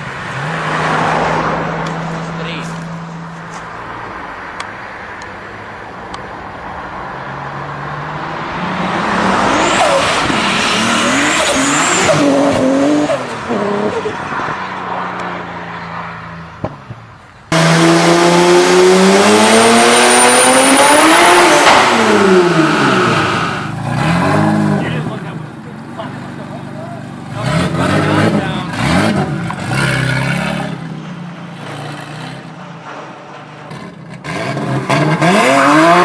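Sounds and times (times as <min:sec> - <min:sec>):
car engine revving: 0:07.9 - 0:16.0, 0:17.5 - 0:32.9, 0:33.5 - 0:36.0
engine revving with high whine: 0:17.5 - 0:25.4, 0:27.3 - 0:32.6, 0:33.7 - 0:36.0.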